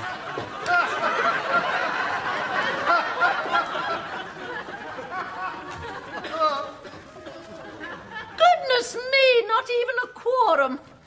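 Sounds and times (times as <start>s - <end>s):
audience laughing: 0.0s - 8.6s.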